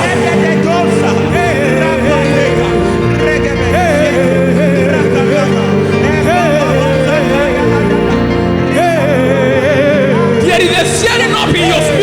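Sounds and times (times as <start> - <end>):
person singing wordless melody: 0.0 - 12.0
sustained keyboard chords: 0.0 - 12.0.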